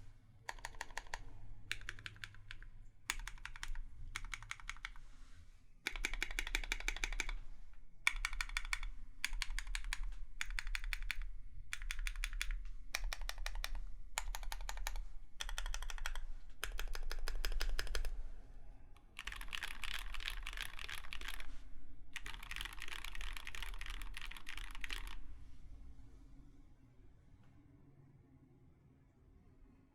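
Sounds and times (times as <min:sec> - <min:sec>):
mechanical keyboard typing: 0:00.5 - 0:05.0, 0:05.8 - 0:07.4, 0:08.1 - 0:18.1, 0:19.1 - 0:21.5, 0:22.2 - 0:25.3.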